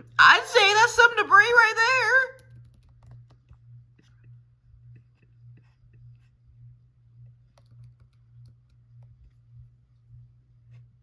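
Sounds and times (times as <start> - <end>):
low pulsing hum: 0.0 - 11.0
computer keyboard clicks: 2.4 - 3.6, 7.5 - 8.8.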